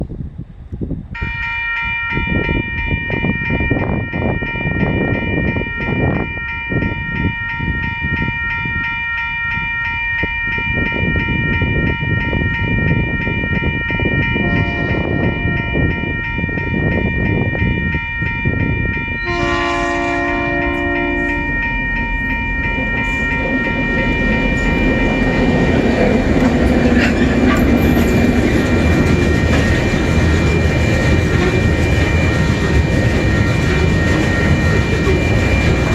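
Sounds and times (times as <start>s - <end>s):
train rumbling past: 0.0s - 35.9s
train horn: 1.2s - 1.9s, 14.4s - 15.8s, 19.2s - 25.5s
level crossing warning bells: 1.2s - 35.9s.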